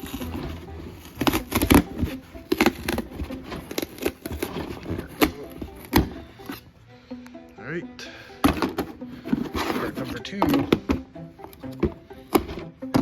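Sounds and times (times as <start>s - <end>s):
filament cracking off cardboard: 0.0s - 6.6s.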